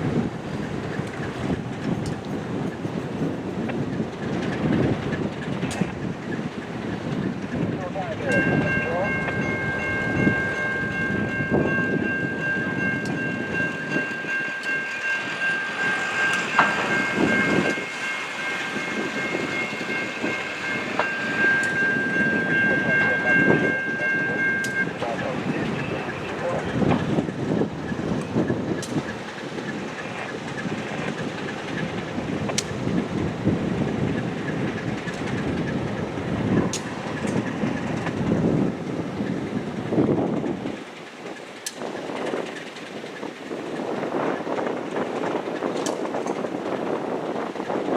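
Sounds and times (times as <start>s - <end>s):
train wheels rumbling and clacking: 0.0s - 47.9s
high-pitched crossing bell ringing: 8.2s - 26.0s.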